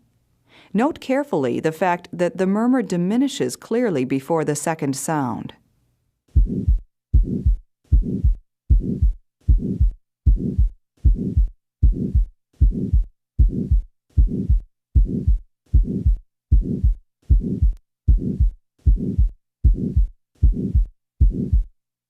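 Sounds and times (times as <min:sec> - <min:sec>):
heartbeat with murmur: 0:06.3 - 0:21.7.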